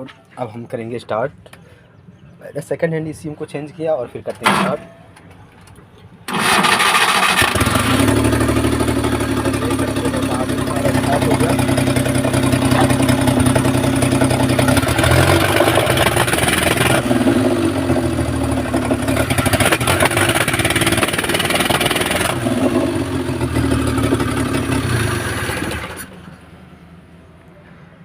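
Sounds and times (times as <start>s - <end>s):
car engine revving: 6.3s - 26.2s.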